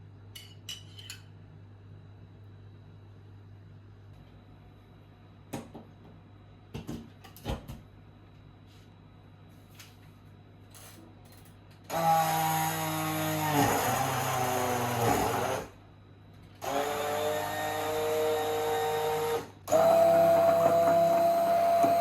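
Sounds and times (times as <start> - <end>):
blender motor running: 11.9 - 15.7, 16.6 - 22.0.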